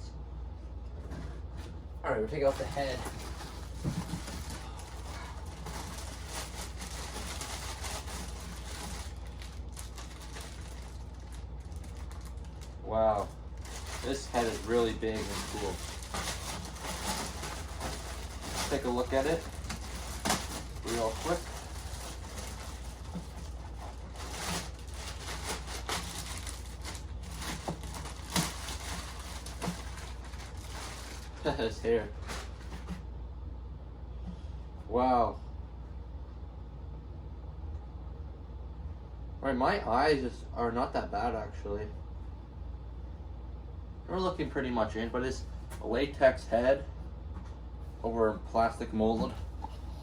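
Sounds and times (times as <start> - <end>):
steady low hum: 0.0 - 50.0
packaging rustling and crinkling: 2.3 - 33.0.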